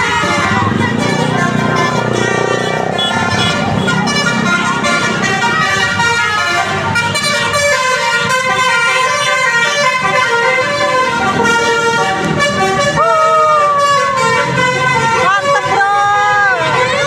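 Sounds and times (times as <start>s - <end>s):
bus engine running: 0.0s - 17.0s
multi-tone bus horn: 0.0s - 17.0s.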